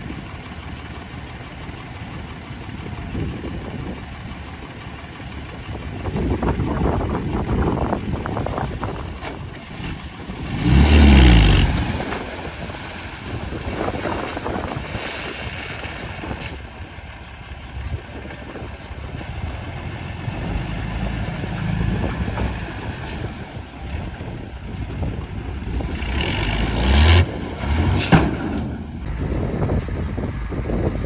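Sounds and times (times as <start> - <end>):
heavy diesel engines running: 0.0 - 31.0.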